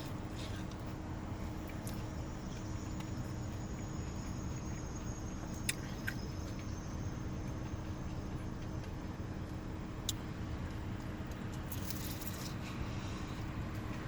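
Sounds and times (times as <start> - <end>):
low background hum: 0.0 - 14.0.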